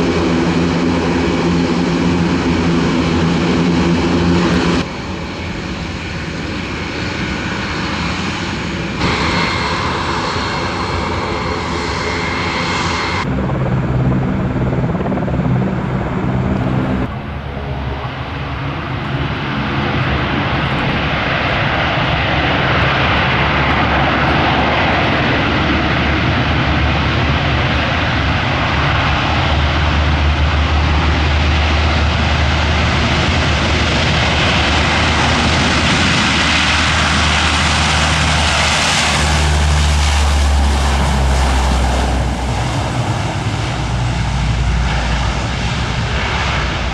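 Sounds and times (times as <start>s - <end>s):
turboprop engines and propellers: 0.0s - 46.9s.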